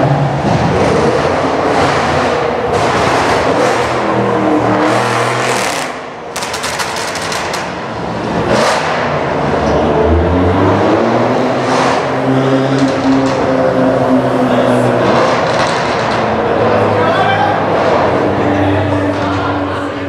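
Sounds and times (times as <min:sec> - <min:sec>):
car engine revving and accelerating: 0:00.0 - 0:20.0
exhaust crackles: 0:04.9 - 0:08.6.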